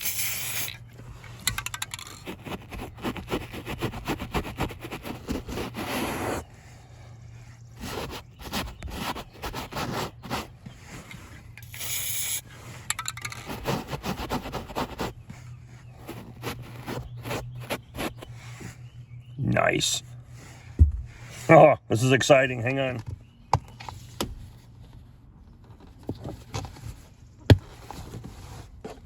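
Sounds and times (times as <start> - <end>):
brush scrubbing carpet: 2.3 - 6.5, 7.8 - 10.6
aerosol spray hiss: 11.7 - 12.4.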